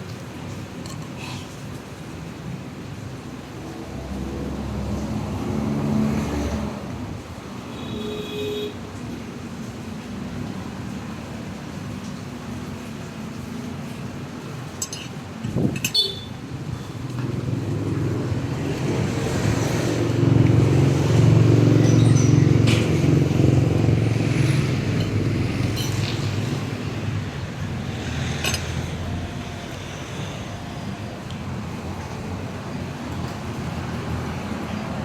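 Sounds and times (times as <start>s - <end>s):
vehicle engine passing by: 3.9s - 7.0s, 17.2s - 30.8s.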